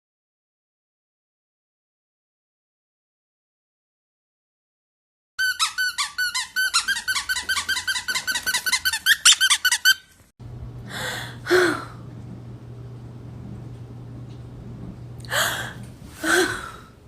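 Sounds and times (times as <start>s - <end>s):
high-pitched squeaks: 5.4s - 10.2s
low steady hum: 10.4s - 17.0s.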